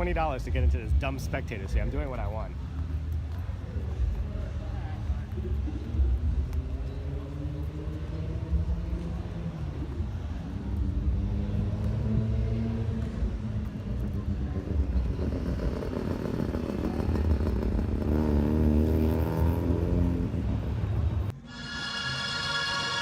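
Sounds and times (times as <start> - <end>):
car engines revving: 6.5 - 23.0.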